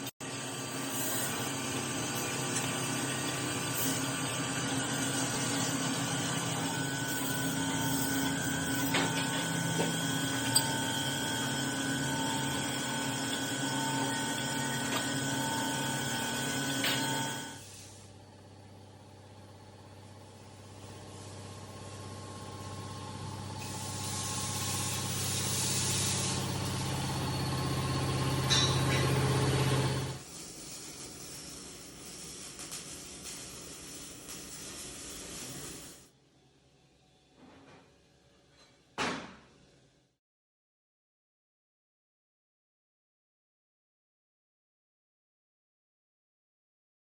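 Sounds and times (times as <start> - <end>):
welding hum and hiss: 0.0 - 36.1.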